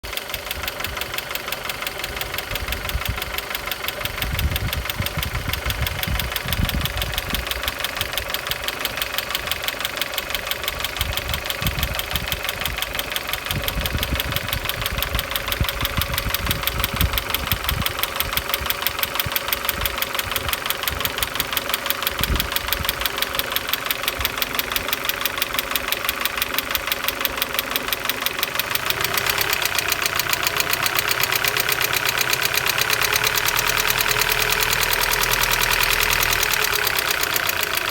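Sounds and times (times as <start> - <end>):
car engine idling: 0.0 - 37.9
rapid even engine knock: 0.1 - 37.9.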